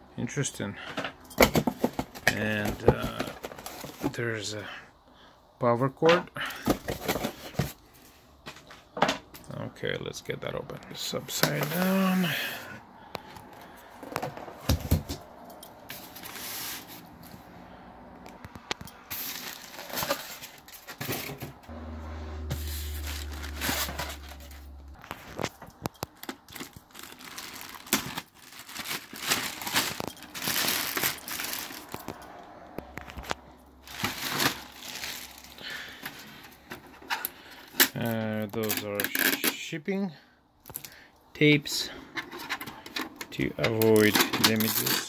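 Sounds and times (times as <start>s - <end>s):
plastic wrapping crinkling: 18.7s - 21.0s, 22.6s - 32.2s, 33.0s - 36.4s
low hum: 21.6s - 25.0s
packing material tearing: 26.1s - 32.2s, 33.8s - 35.8s.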